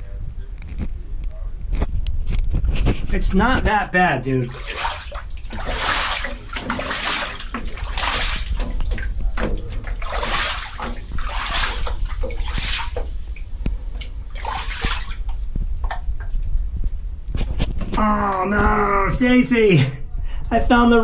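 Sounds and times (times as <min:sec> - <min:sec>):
person wading through deep water: 0:04.4 - 0:16.3.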